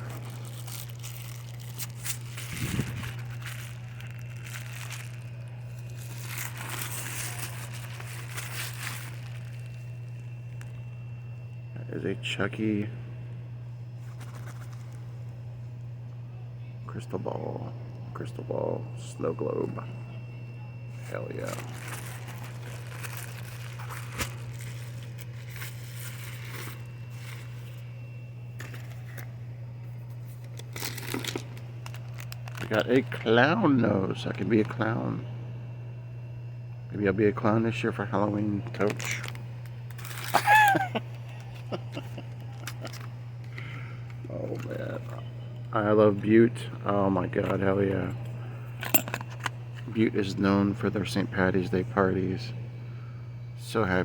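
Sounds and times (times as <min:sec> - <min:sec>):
wrapping paper crinkling: 0:00.0 - 0:10.8, 0:14.0 - 0:15.0, 0:21.0 - 0:33.3, 0:38.6 - 0:43.7
steady low hum: 0:00.0 - 0:54.0.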